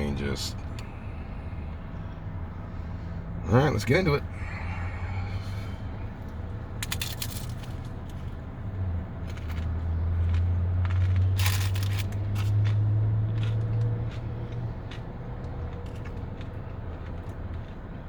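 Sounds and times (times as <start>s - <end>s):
low hum: 4.2s - 12.2s
hard-shell taco crunching: 4.4s - 18.0s.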